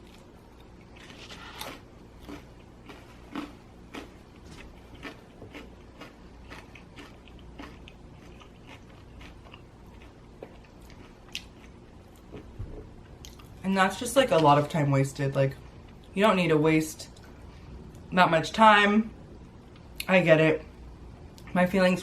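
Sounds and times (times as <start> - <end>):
person chewing crispy pizza: 0.0 - 13.6.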